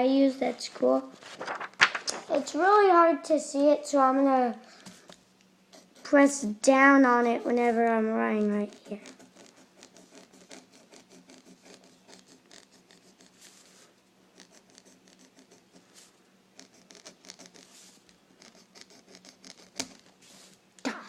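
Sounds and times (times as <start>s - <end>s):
pencil scratching on paper: 5.7s - 6.4s, 7.2s - 20.6s.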